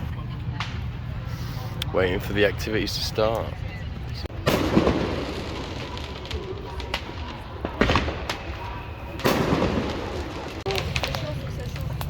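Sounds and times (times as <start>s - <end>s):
firework bangs: 4.3s - 12.0s.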